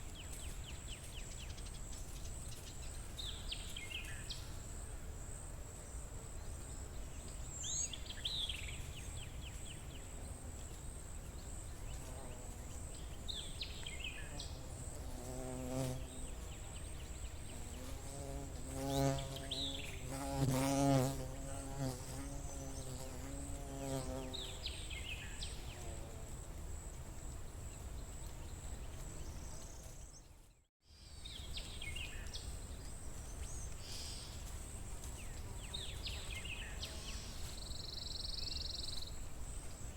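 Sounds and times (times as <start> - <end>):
flying insect buzzing: 14.1 - 26.4.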